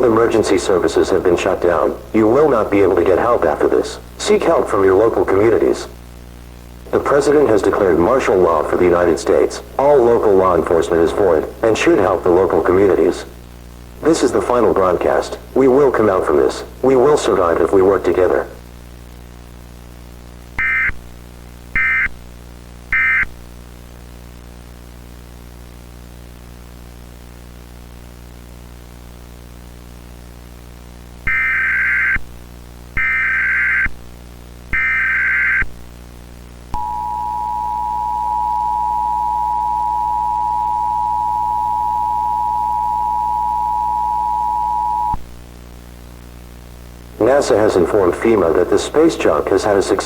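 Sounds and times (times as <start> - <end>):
buzzy data bursts: 0.0 - 13.4, 36.8 - 45.2
hum and hiss: 0.0 - 50.0
two-tone attention signal: 36.8 - 45.2.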